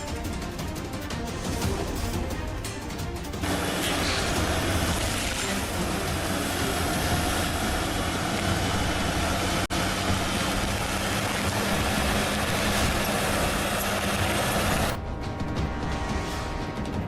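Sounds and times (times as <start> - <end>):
music: 0.0 - 17.0
heavy machine engine running: 3.4 - 15.0.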